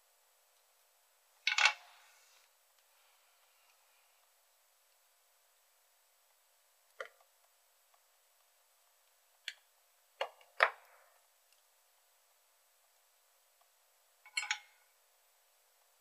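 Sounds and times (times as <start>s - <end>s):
tools clicking and knocking on workbench: 1.5s - 1.8s, 14.3s - 14.7s.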